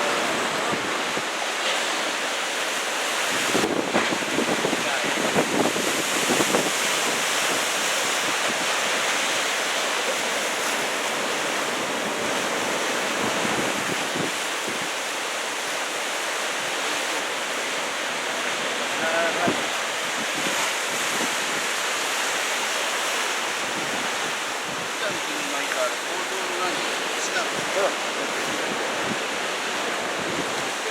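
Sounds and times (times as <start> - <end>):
heavy ocean surf: 0.0 - 30.9
wind buffeting microphone: 3.2 - 9.5, 11.2 - 15.0, 18.2 - 22.4, 23.6 - 25.2, 26.4 - 30.9.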